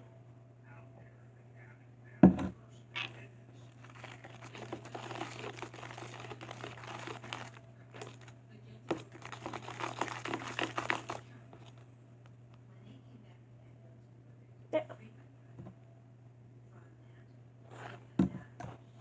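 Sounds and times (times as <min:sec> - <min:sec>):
slime stirred sticky crackling: 0:03.0 - 0:11.9.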